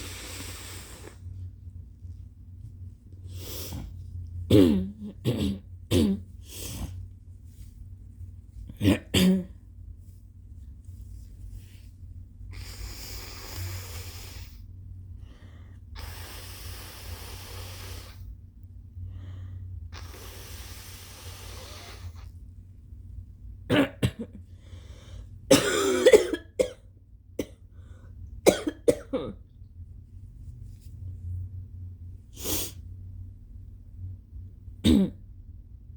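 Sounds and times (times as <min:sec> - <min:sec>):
wet phlegmy coughs: 0:04.5 - 0:06.2, 0:08.8 - 0:09.6, 0:23.7 - 0:24.4, 0:25.5 - 0:26.8, 0:28.5 - 0:29.4, 0:34.8 - 0:35.2
person blowing nose: 0:12.5 - 0:14.6, 0:20.0 - 0:22.3, 0:32.4 - 0:32.8.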